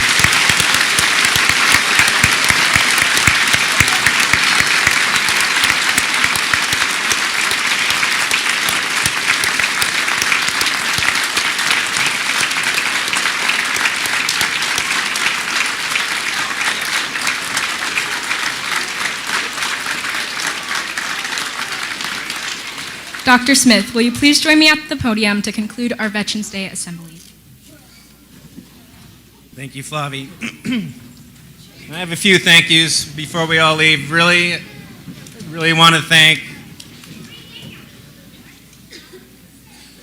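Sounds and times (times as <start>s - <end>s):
crowd applauding: 0.0s - 24.9s, 31.9s - 38.2s.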